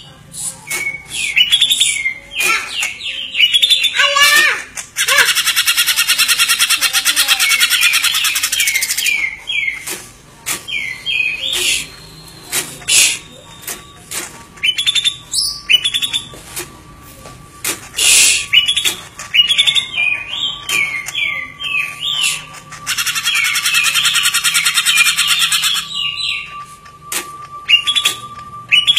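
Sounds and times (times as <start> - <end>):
songbird chirping: 10.6 - 17.1, 18.0 - 28.9
fast chattering trill: 18.0 - 26.0.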